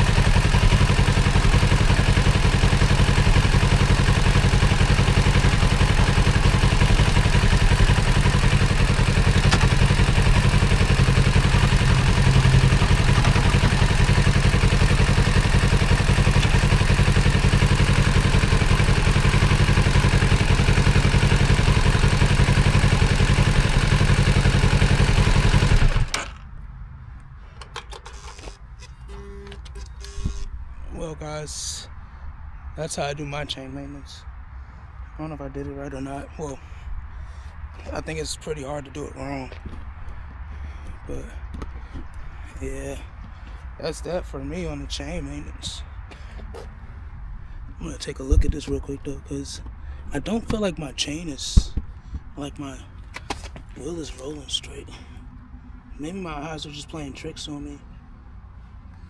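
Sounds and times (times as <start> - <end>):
motorcycle engine running: 0.0 - 26.4.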